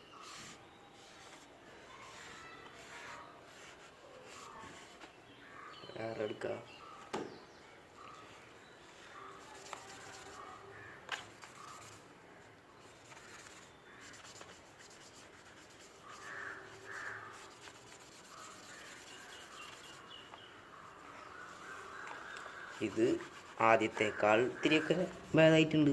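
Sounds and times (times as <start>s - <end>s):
cloth rubbing a screen: 0.1s - 5.1s, 9.0s - 12.0s, 12.8s - 20.2s, 20.9s - 25.5s
distant crows cawing: 5.3s - 11.8s, 16.0s - 17.7s, 20.3s - 25.3s.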